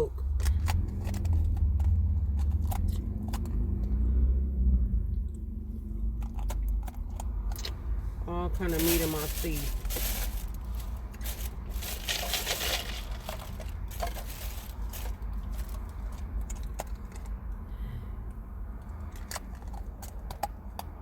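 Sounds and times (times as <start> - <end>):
low car interior hum: 0.0 - 21.0
wrapper crinkling and rustling: 8.5 - 17.0
chewing food: 9.7 - 17.6.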